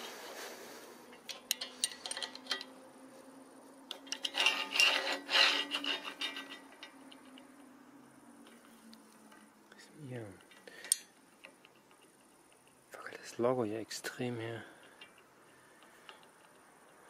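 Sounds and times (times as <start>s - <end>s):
metal scraping and rubbing: 0.0s - 7.6s.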